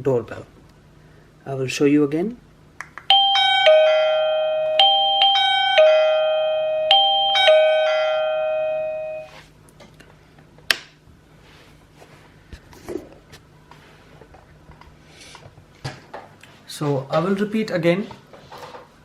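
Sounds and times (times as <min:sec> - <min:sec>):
doorbell chime ding-dong: 0:03.1 - 0:09.4.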